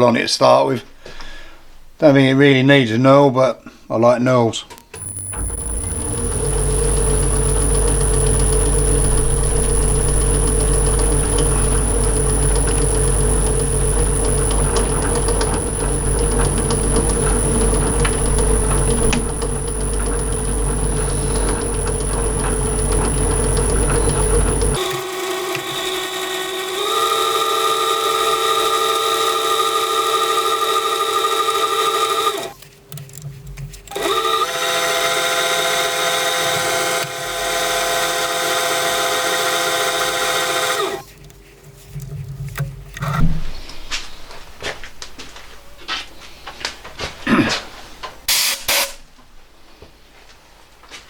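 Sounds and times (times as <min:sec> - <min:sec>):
high machine whine: 0:04.9 - 0:32.6, 0:33.9 - 0:41.1
metal lathe humming and whining: 0:05.0 - 0:32.6, 0:33.9 - 0:41.1.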